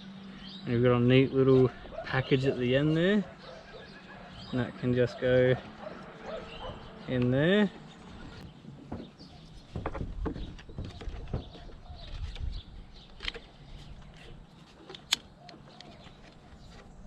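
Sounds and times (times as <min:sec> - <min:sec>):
strap knocks and rustles: 0:08.7 - 0:12.6.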